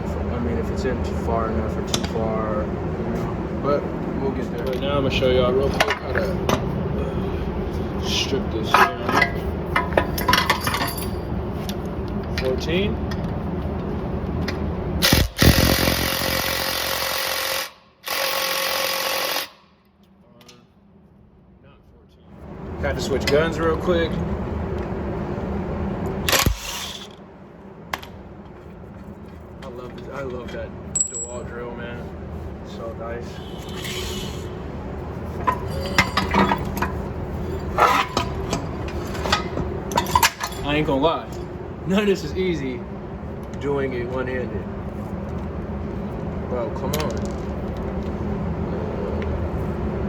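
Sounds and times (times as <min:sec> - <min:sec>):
metal tools clinking: 0:08.7 - 0:11.3, 0:30.0 - 0:31.5, 0:35.5 - 0:40.9
impact gun whirring: 0:15.0 - 0:19.7, 0:26.2 - 0:27.2.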